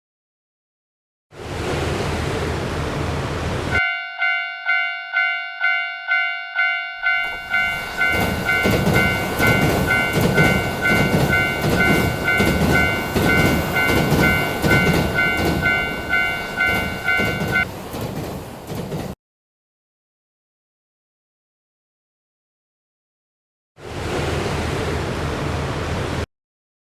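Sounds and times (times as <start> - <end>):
train rumble and wheel clatter: 1.4 - 19.2, 23.8 - 26.2
crossing warning bell ringing: 3.8 - 17.7.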